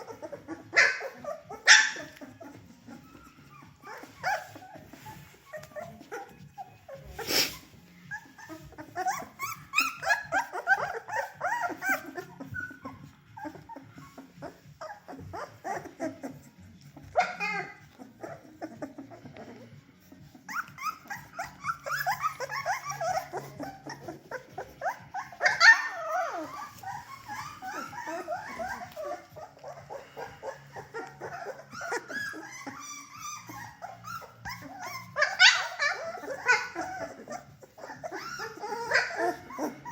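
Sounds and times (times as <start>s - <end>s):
puppies whimpering and squeaking: 0.0s - 39.9s.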